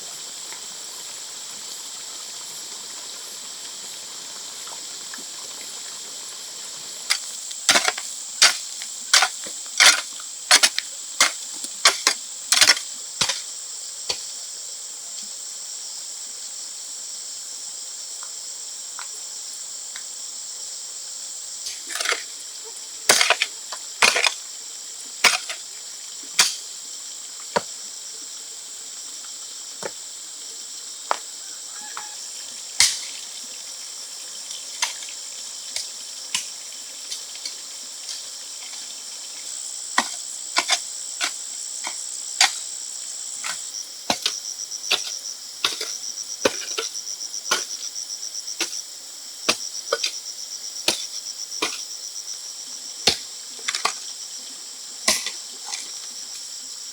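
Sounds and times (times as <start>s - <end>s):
insects chirring high: 19.0s - 56.9s
pulsing insect call: 21.4s - 56.9s.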